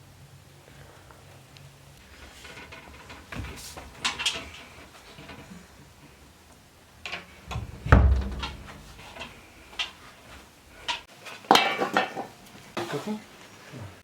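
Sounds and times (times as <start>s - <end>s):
pots and dishes clattering: 2.1s - 6.2s, 7.0s - 13.1s.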